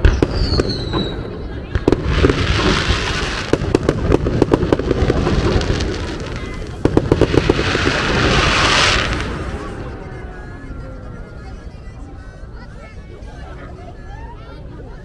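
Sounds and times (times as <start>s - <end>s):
fireworks hissing crackle: 0.0s - 10.2s
fireworks bangs: 0.0s - 10.4s.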